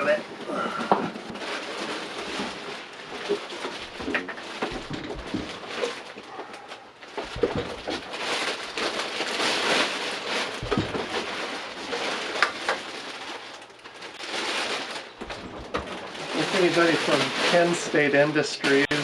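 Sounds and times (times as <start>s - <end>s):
cardboard and foam rustling: 0.0s - 19.0s
knocks: 3.3s - 9.8s, 10.6s - 11.5s.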